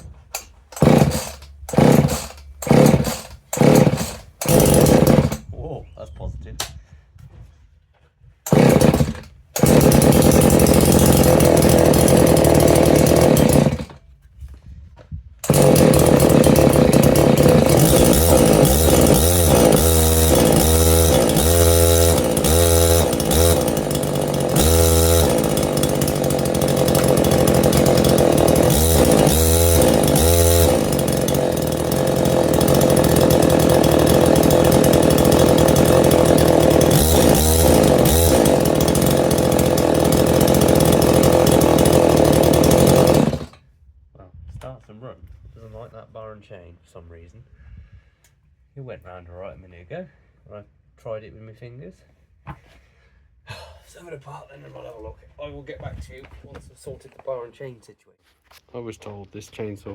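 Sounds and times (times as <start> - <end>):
chainsaw revving: 0.0 - 5.4, 8.5 - 14.0, 15.4 - 43.6.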